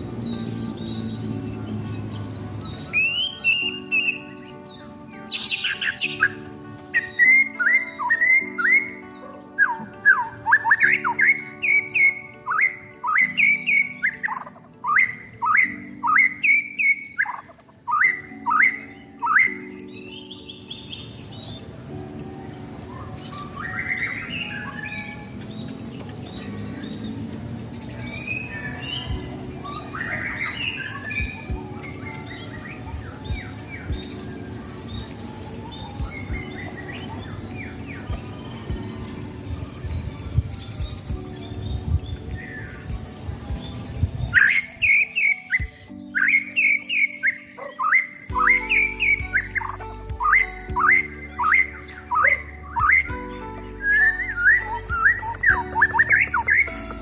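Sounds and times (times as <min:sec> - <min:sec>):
bird twittering: 0:00.4 - 0:21.7, 0:27.7 - 0:57.0
bird whistling downward sweeps: 0:28.0 - 0:53.1.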